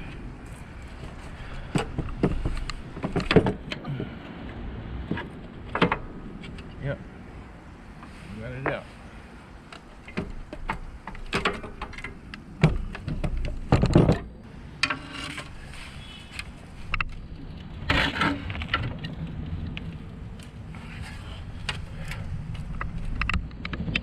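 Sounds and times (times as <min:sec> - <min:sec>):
clatter of hand tools and metal parts: 0:10.0 - 0:17.2.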